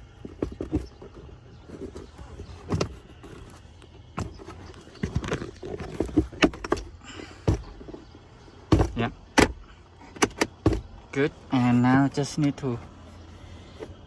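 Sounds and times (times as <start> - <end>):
plastic glove box clicks and knocks: 0.0 - 11.1.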